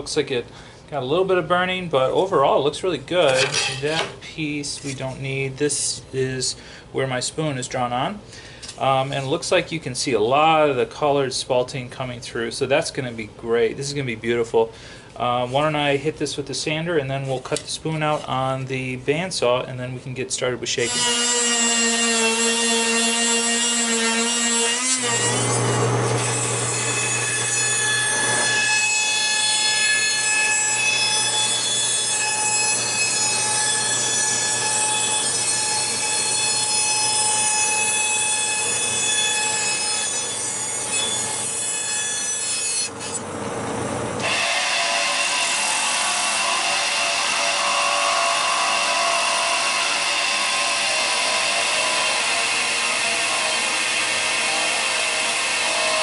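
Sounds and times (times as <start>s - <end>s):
power tool motor whine: 24.6s - 28.6s, 44.2s - 56.0s
wood rubbing against abrasive: 44.2s - 56.0s.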